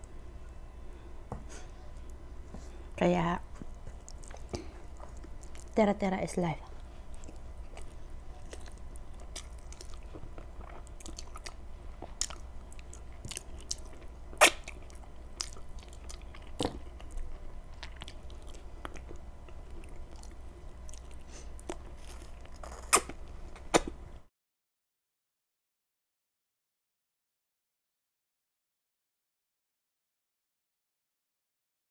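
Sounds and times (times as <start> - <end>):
person chewing food: 3.5 - 5.8, 6.7 - 24.0.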